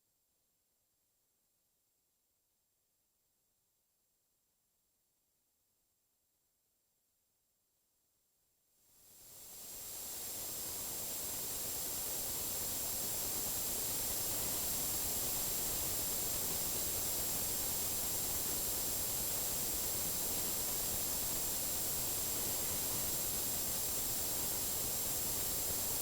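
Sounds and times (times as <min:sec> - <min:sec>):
static hiss: 0:09.2 - 0:26.0.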